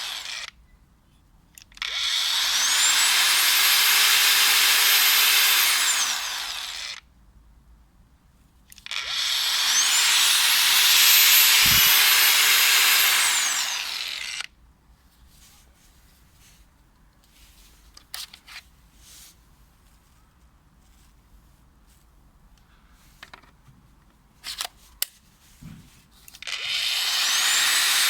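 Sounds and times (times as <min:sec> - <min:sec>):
angle grinder motor whine: 0:01.9 - 0:06.9, 0:09.0 - 0:14.4, 0:26.5 - 0:28.0.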